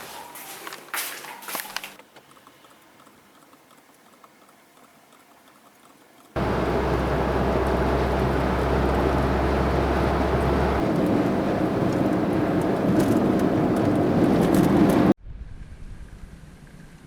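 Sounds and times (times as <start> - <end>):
road noise rushing: 6.4 - 15.2
steady low hum: 6.4 - 15.2
vehicle engine: 6.4 - 15.2.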